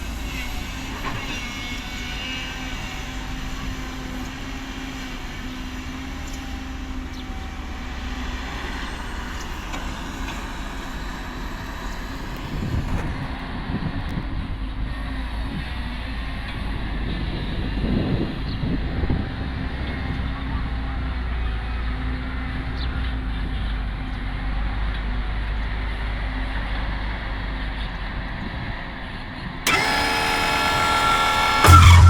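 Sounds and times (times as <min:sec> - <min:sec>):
excavator diesel engine running: 0:06.6 - 0:13.3, 0:29.7 - 0:32.0.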